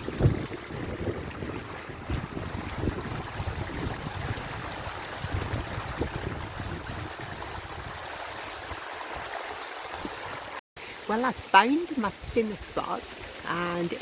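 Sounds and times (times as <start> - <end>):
wind buffeting microphone: 0.0 - 10.5
stream rushing over rocks: 0.0 - 14.0.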